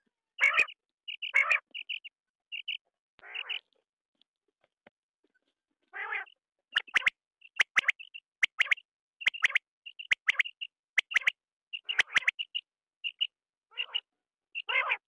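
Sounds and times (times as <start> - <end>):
quail calling: 0.4 - 3.6, 6.0 - 14.0, 14.6 - 15.0.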